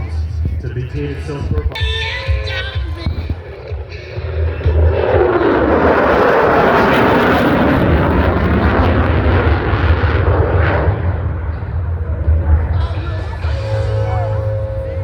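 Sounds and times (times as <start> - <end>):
jet engine roar: 0.0 - 15.0.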